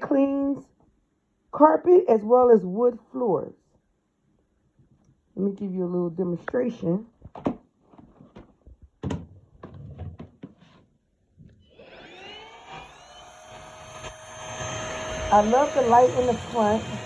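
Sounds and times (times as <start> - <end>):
stick vacuum motor whine: 11.6 - 17.0.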